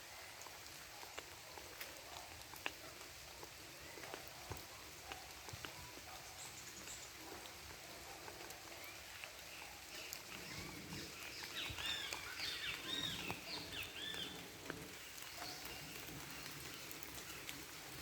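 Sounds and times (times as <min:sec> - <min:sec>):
bird chirping: 0:09.9 - 0:17.4.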